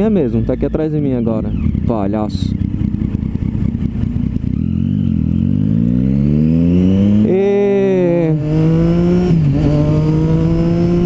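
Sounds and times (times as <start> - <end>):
motorcycle engine accelerating: 0.0 - 11.0.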